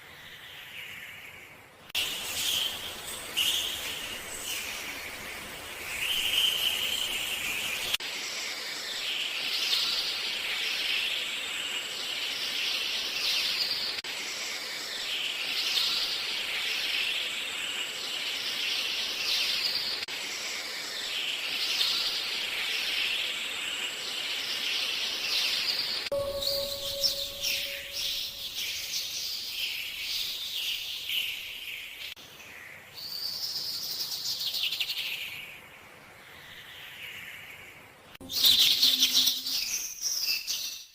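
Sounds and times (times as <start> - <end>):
birds chirping: 0.3 - 8.0, 24.3 - 32.2.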